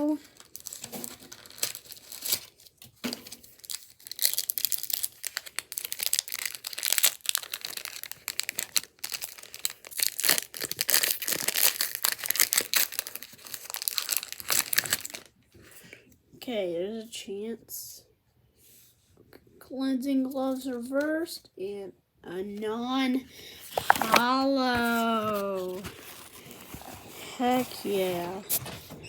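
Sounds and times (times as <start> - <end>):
foil wrapper crinkling and tearing: 0.1 - 15.3, 23.4 - 28.5.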